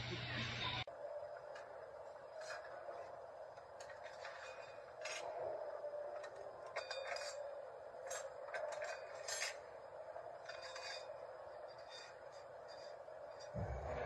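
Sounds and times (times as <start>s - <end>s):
steady hum: 0.0s - 14.0s
metal parts clinking and scraping: 6.1s - 9.8s, 10.4s - 13.5s.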